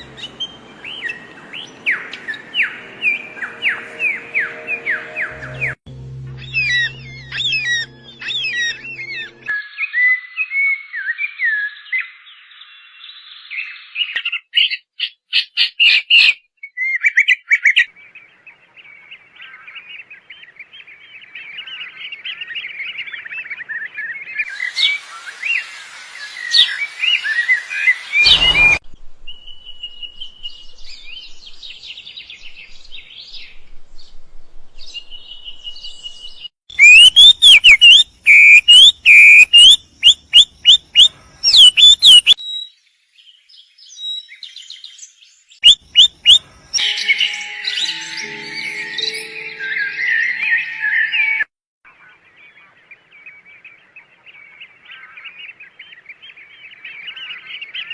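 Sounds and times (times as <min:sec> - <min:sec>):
songbirds singing: 0:00.0 - 0:05.7, 0:06.4 - 0:25.7, 0:34.8 - 0:57.9
loud sharp bird call notes: 0:24.4 - 0:28.8, 0:36.7 - 0:42.4.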